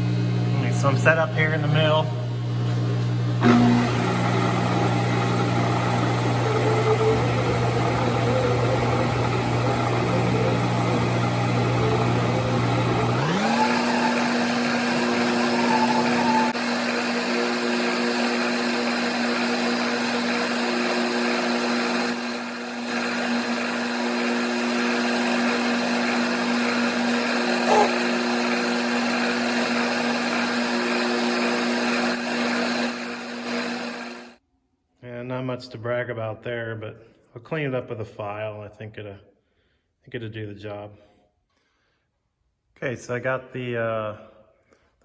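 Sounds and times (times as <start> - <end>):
milling machine whining: 0.0 - 34.4.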